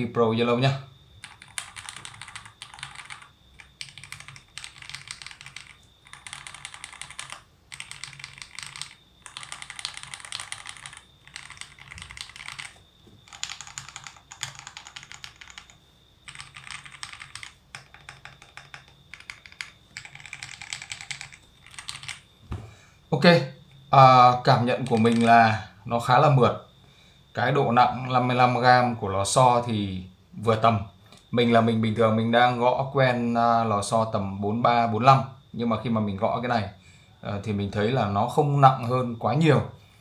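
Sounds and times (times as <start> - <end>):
mechanical keyboard typing: 1.2 - 22.3, 24.8 - 25.5.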